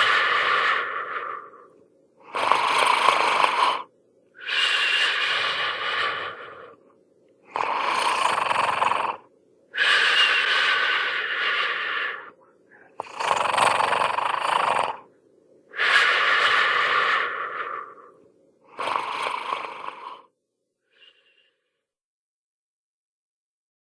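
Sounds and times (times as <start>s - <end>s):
cartoon snoring: 0.0s - 6.8s, 7.5s - 12.4s, 13.0s - 15.1s, 15.7s - 20.3s.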